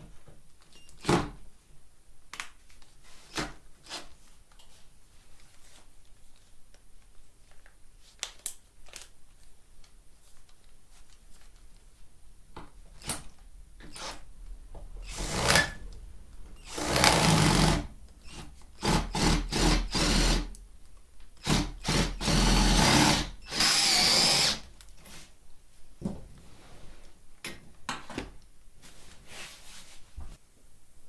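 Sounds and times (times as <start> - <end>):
power drill bursts: 13.0 - 14.2, 15.0 - 20.6, 21.4 - 24.7.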